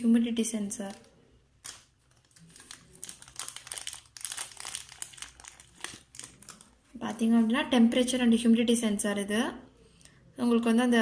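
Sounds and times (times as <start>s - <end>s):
plastic packet crinkling: 0.8s - 7.3s.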